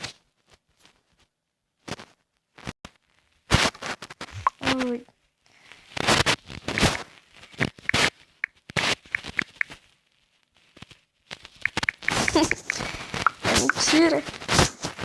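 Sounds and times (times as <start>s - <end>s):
phone being handled and typed on: 9.1s - 9.7s, 11.7s - 14.9s
short high blips: 9.2s - 9.7s, 11.7s - 15.0s.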